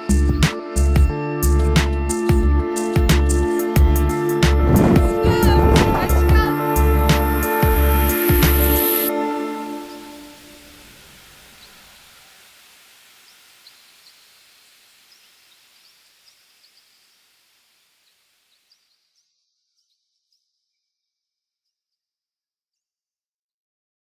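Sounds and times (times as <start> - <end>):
outdoor ambient noise: 3.0 - 19.4.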